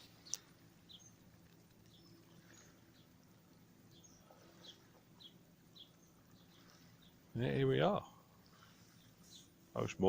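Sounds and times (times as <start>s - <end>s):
faint bird chirps: 0.0s - 10.0s.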